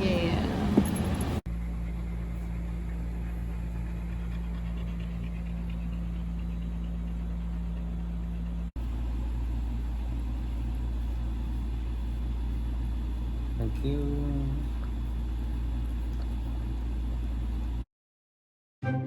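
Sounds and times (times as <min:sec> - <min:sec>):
road noise inside car: 0:00.0 - 0:01.4
dog panting: 0:02.4 - 0:08.7.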